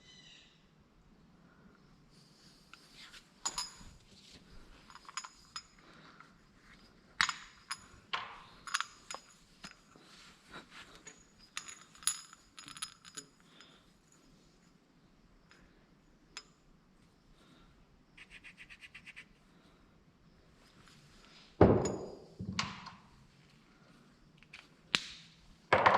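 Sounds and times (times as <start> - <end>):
metal parts clinking: 2.7 - 14.3.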